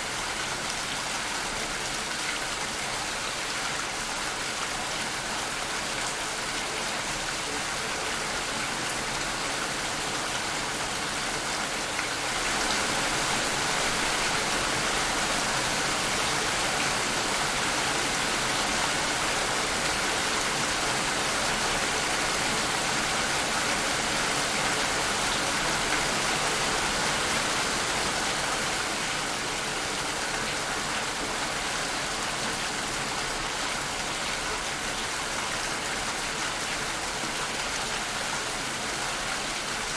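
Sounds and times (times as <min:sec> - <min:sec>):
dense rainfall: 0:00.0 - 0:39.9.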